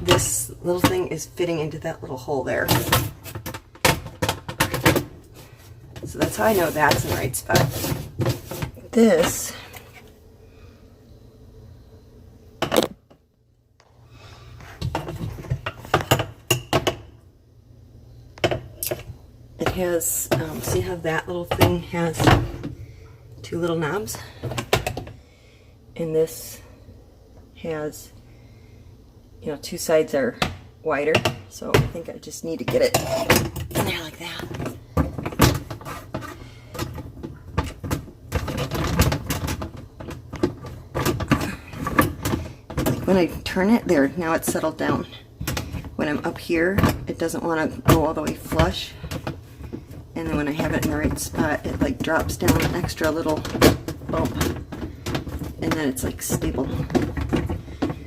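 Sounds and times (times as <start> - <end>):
plastic parts knocking and clicking: 32.8 - 43.3, 47.8 - 58.0.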